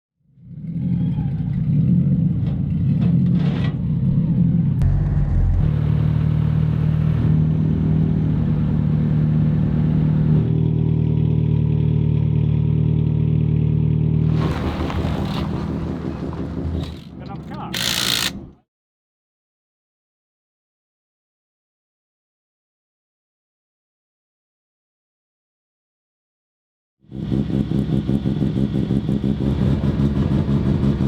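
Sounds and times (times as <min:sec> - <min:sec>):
car engine humming: 0:01.1 - 0:10.5
sharp click: 0:17.4 - 0:18.6.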